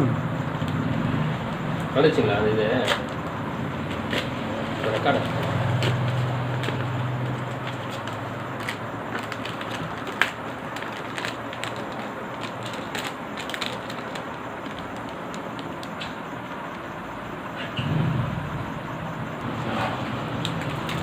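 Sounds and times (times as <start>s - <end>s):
plastic packaging crinkling: 1.5s - 16.3s, 20.4s - 21.0s.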